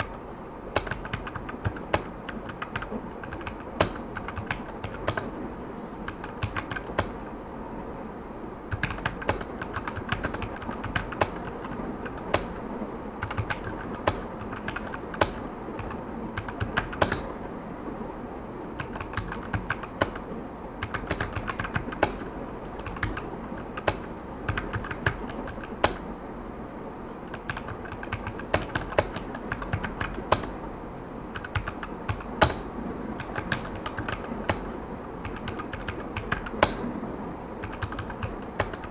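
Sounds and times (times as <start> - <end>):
mechanical keyboard key clacks: 0.8 - 5.3, 6.1 - 7.2, 8.7 - 12.6, 13.2 - 17.3, 18.8 - 20.2, 20.8 - 26.0, 27.3 - 30.5, 31.4 - 32.6, 33.2 - 36.9, 37.6 - 38.9.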